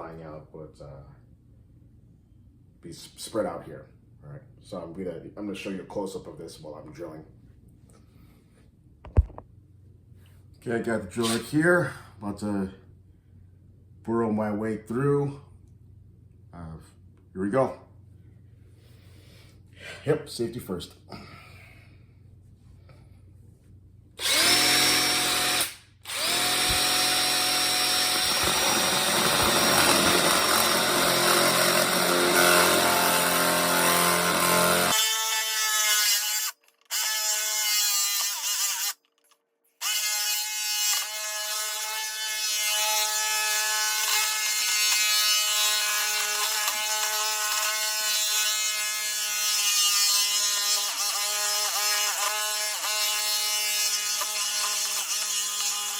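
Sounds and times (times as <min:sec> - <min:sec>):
power drill boring into metal: 0:11.2 - 0:11.6, 0:24.2 - 0:39.0, 0:39.8 - 0:55.9.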